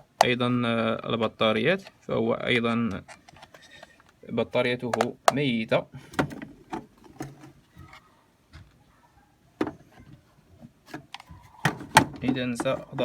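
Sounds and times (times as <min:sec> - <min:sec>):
hard objects clicking and knocking: 0:10.9 - 0:13.0.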